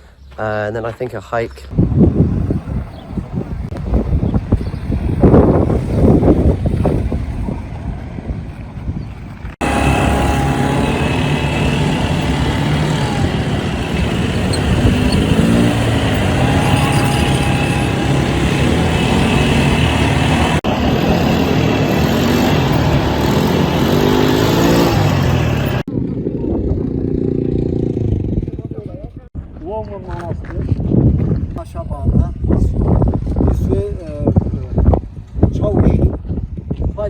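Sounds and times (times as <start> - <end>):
road noise: 0.0 - 31.9
wind noise: 1.6 - 37.0
quad bike engine revving: 9.6 - 28.6.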